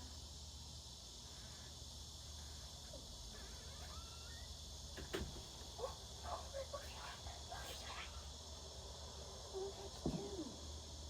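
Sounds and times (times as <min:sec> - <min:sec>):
high-pitched insect buzz: 0:01.2 - 0:04.9.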